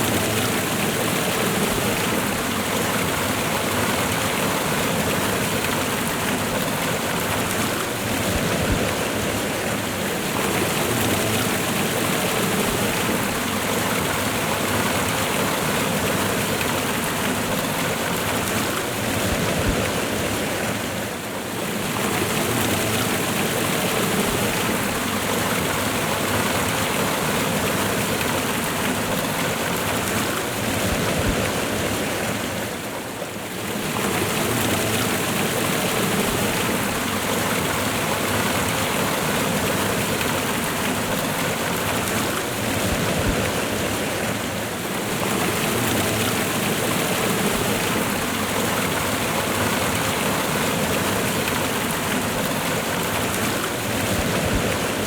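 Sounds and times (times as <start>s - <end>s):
waterfall and rushing river: 0.0s - 55.0s.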